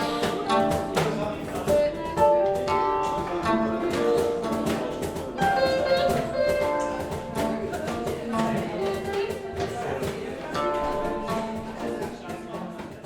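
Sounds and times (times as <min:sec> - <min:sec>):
drum kit: 0:00.0 - 0:13.0
plucked string instrument melody: 0:00.0 - 0:13.0.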